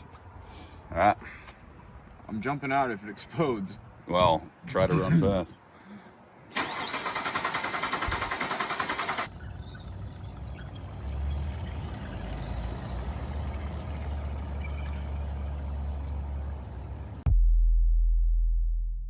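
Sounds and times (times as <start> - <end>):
starter motor cranking engine: 6.5 - 9.3.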